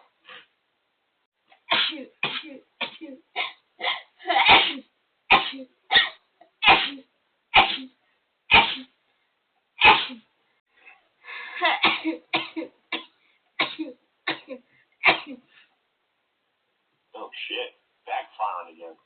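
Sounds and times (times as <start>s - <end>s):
person sneezing: 1.7s - 9.0s, 9.8s - 10.3s.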